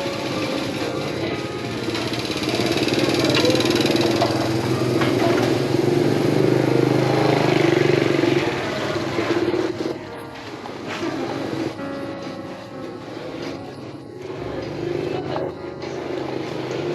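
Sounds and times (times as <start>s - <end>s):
small engine passing: 0.0s - 10.1s.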